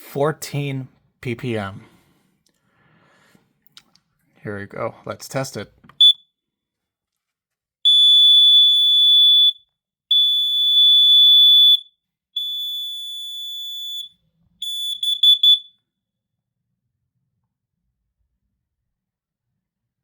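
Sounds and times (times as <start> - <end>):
gas alarm pulsing tone: 6.0 - 6.2, 7.9 - 15.9
alarm chirps: 7.9 - 15.8.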